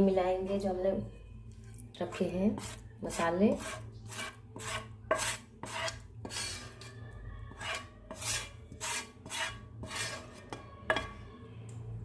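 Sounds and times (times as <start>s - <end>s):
spoon scraping in a bowl: 1.7s - 11.2s.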